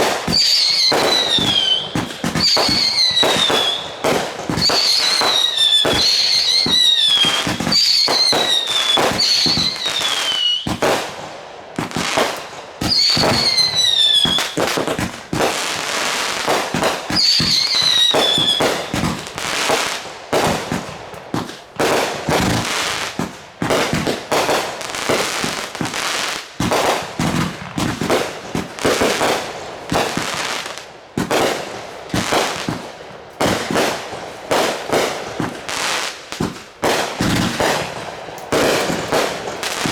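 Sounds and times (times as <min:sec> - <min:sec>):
falling firework whistles: 0:00.0 - 0:11.1, 0:12.0 - 0:20.0
fireworks bangs and crackling: 0:00.0 - 0:39.9.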